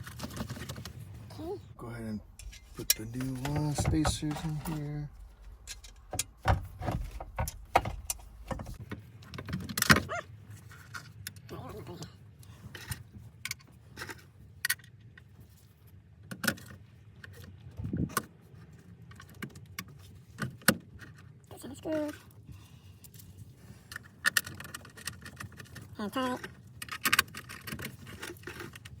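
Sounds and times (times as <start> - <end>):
small metal parts clinking: 2.2 - 8.8.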